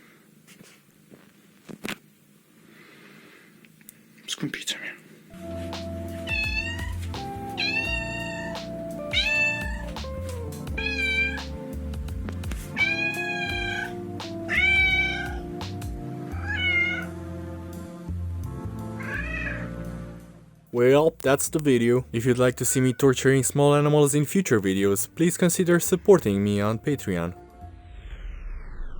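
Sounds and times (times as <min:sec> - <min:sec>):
background music: 0:05.3 - 0:28.2
cat meowing: 0:06.2 - 0:10.0, 0:10.8 - 0:11.5, 0:12.7 - 0:15.4, 0:16.3 - 0:17.1, 0:19.0 - 0:19.7, 0:22.7 - 0:23.0.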